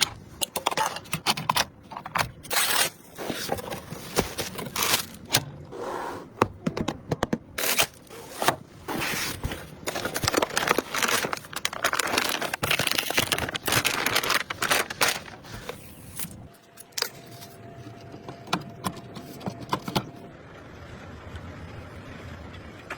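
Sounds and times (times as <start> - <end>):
packaging crinkling and tearing: 1.2 - 5.4, 7.6 - 17.6.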